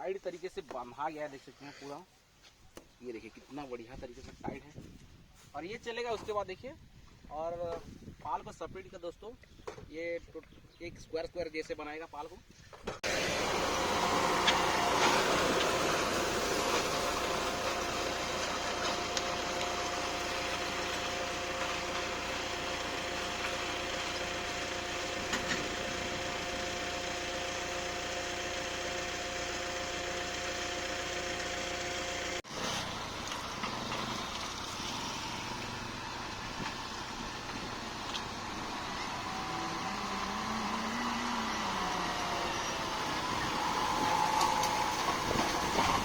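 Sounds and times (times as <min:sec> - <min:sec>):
farm machinery humming: 0:13.0 - 0:46.0
tractor engine running: 0:13.0 - 0:46.0.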